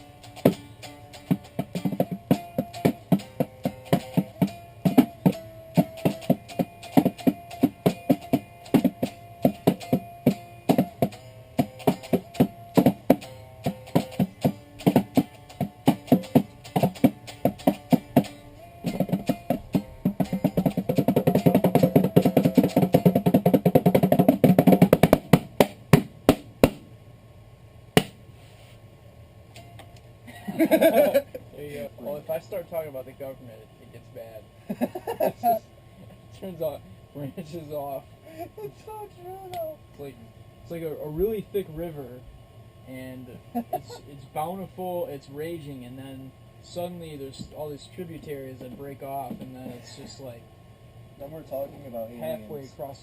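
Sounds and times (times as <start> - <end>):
plucked guitar: 0.0 - 25.7
light percussion: 0.0 - 26.9, 42.9 - 50.4.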